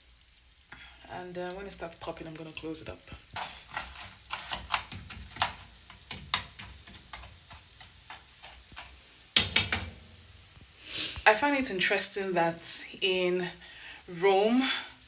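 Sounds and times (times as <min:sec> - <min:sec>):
corn kernels sizzling in oil: 0:00.0 - 0:15.0
pan clattering: 0:02.6 - 0:10.5
kernels cracking sharply: 0:03.3 - 0:10.6.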